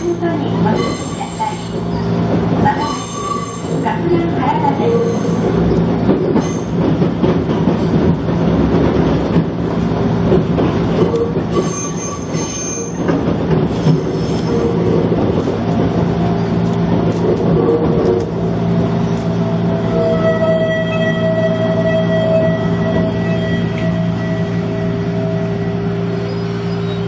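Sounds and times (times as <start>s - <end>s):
railcar motor and wheels rumbling: 0.0s - 27.0s
high wheel squeal: 0.7s - 3.9s, 4.8s - 5.6s, 6.4s - 6.8s, 11.5s - 13.0s, 19.8s - 27.0s.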